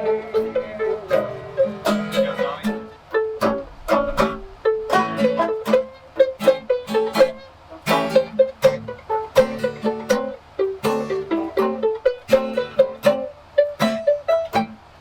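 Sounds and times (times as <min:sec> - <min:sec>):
acoustic plucked string instruments: 0:00.0 - 0:15.0.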